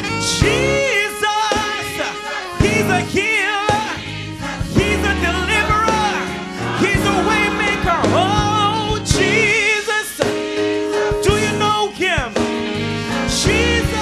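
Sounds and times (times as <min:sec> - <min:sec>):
bass line: 0:00.0 - 0:09.7, 0:10.8 - 0:14.0
person singing gospel: 0:00.0 - 0:14.0
drum hits: 0:03.7 - 0:09.5.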